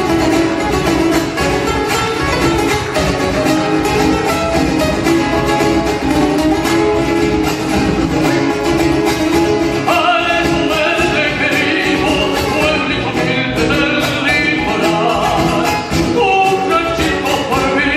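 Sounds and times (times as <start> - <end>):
folk music with guitars: 0.0 - 17.9
person singing: 9.7 - 17.9.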